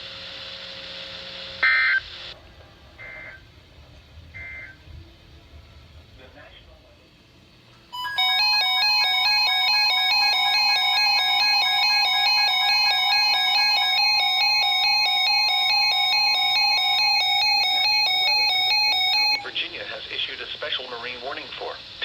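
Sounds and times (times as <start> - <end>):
high alert beeps: 8.0 - 19.4.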